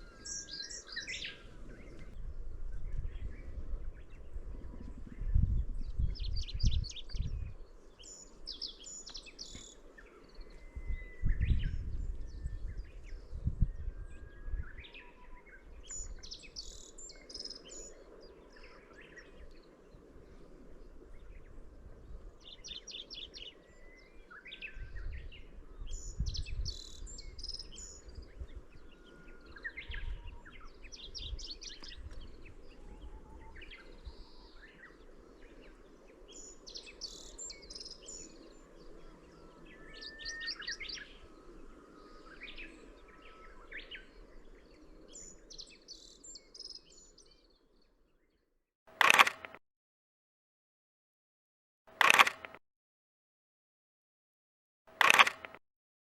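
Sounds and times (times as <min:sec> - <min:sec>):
warbler singing: 0:00.0 - 0:19.9, 0:20.8 - 0:48.3.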